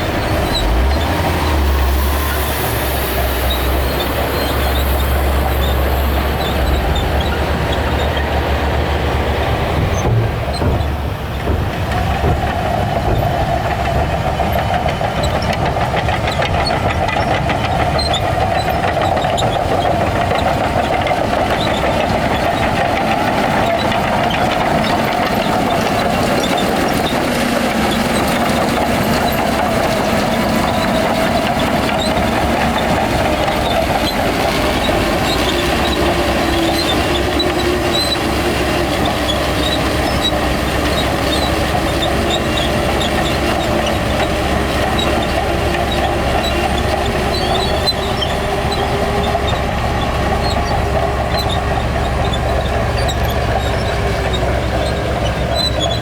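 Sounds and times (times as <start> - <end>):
bulldozer diesel engine working: 0.0 - 56.0
short high squeaks: 2.0 - 8.4, 45.0 - 56.0.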